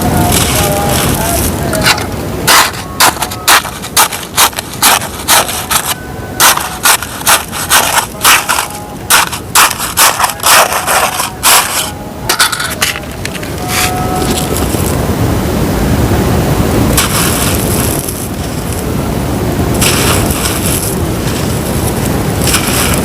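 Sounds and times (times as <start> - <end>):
dirt being scraped: 0.2 - 15.0, 16.9 - 18.8, 19.7 - 23.0.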